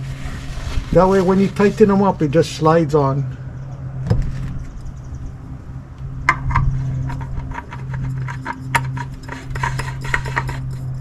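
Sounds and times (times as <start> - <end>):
steady low hum: 0.0 - 11.0
metallic clicks of oil filter: 6.2 - 10.8.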